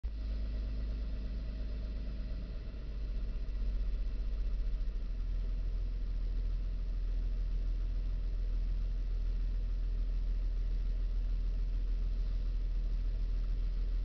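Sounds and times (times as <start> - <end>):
car engine idling roughly: 0.1 - 14.0.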